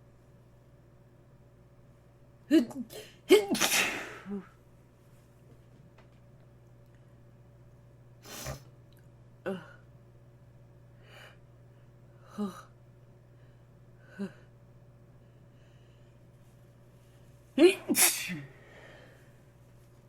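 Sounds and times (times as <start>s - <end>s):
person sneezing: 2.9s - 4.5s, 8.3s - 8.7s, 17.6s - 18.5s.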